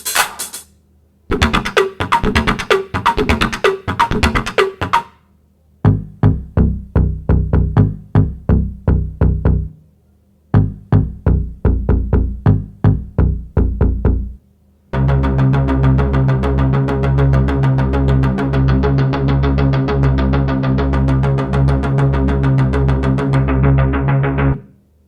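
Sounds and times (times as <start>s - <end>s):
drum machine hits: 0.0s - 0.7s, 1.3s - 5.1s, 5.9s - 9.7s, 10.6s - 14.4s
steady bass: 1.3s - 5.0s, 5.8s - 9.8s, 10.5s - 14.4s, 15.0s - 24.7s
sustained synthesizer chord: 15.0s - 24.7s.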